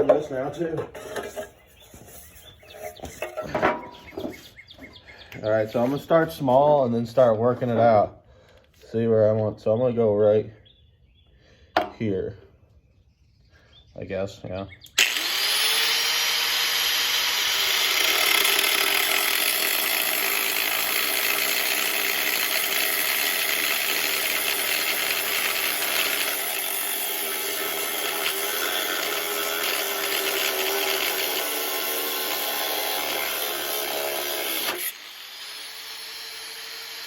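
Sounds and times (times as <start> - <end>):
power tool cutting metal: 14.9 - 37.0.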